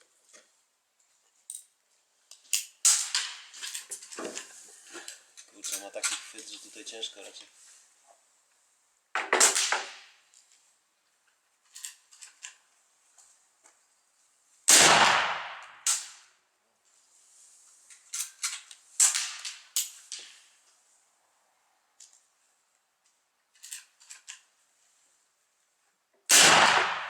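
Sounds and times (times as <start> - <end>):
sharp gunshot cracks: 9.2 - 10.1, 14.7 - 16.2, 19.0 - 19.6, 26.3 - 27.0
loud revolver gunshot: 14.7 - 16.1, 26.3 - 27.0.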